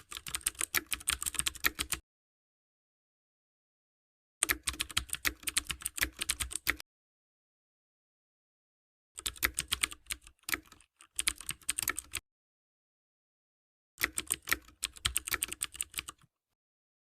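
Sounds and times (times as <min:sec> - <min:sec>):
computer keyboard typing: 0:00.0 - 0:02.0, 0:04.4 - 0:06.8, 0:09.2 - 0:12.2, 0:14.0 - 0:16.3.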